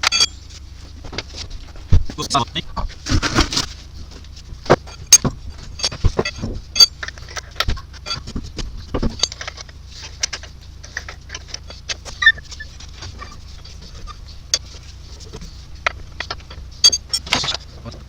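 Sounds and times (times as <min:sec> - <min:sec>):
metal tools clanking: 0:00.0 - 0:00.6, 0:04.7 - 0:18.0.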